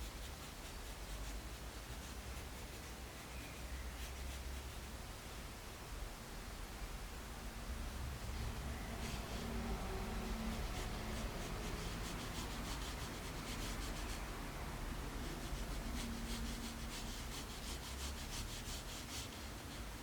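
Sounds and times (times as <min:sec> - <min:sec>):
pencil scratching on paper: 0:08.4 - 0:14.4, 0:15.1 - 0:20.0.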